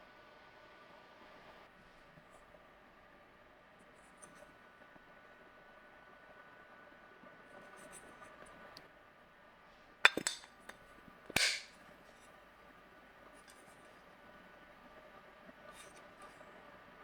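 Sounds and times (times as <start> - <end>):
faint steady hum: 0.0 - 17.0
kitchenware clinking: 10.1 - 11.7.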